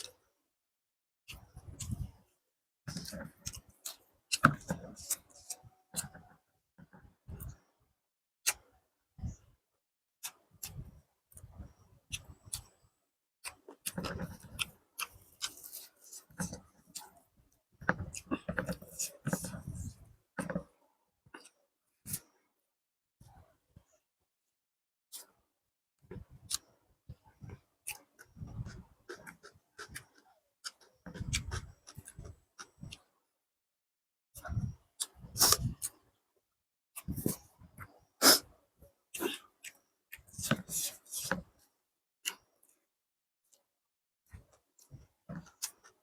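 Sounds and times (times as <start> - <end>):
close chewing with mouth clicks: 2.9 - 6.3, 13.4 - 17.3, 18.0 - 20.6, 27.8 - 33.1, 44.5 - 46.0.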